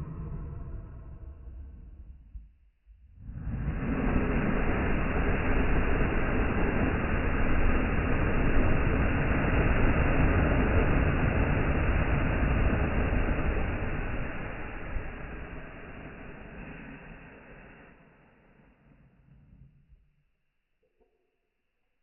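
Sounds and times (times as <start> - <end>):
strong wind rushing: 0.0 - 2.2, 3.2 - 17.8.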